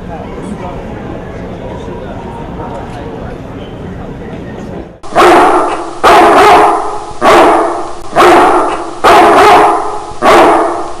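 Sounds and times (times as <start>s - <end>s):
dog barking loudly: 5.0s - 11.0s.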